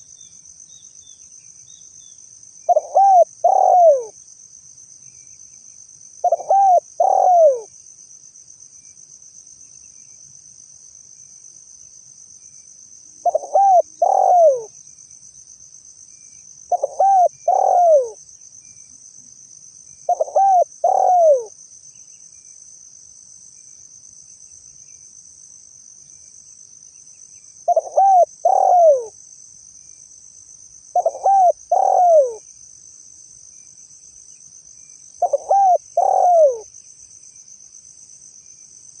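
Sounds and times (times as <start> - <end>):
dove cooing: 2.7 - 4.2, 6.2 - 7.7, 13.2 - 14.7, 16.7 - 18.2, 20.1 - 21.5, 27.7 - 29.2, 31.0 - 32.4, 35.2 - 36.7
high insect buzz: 13.2 - 39.0.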